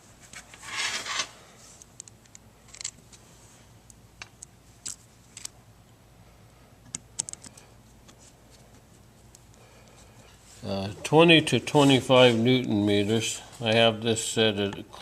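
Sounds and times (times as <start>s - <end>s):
small metal parts clicking: 2.0s - 3.0s.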